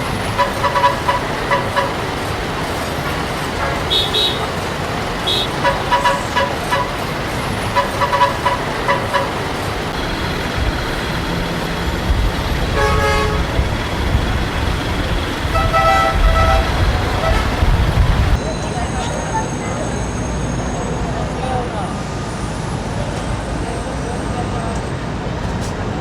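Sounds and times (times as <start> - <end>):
traffic engines rumbling: 0.0 - 26.0
car horn toots: 0.3 - 2.1, 3.6 - 4.6, 5.2 - 9.6, 12.7 - 13.6, 15.4 - 17.8
long car horn honk: 0.4 - 2.0, 3.6 - 4.6, 5.2 - 7.1, 7.7 - 9.4, 12.7 - 13.6, 15.5 - 17.7.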